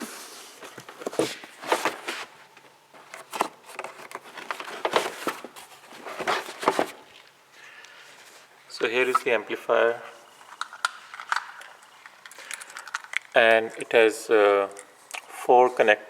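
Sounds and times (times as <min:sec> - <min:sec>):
handling knocks and rustles: 0:00.0 - 0:07.4.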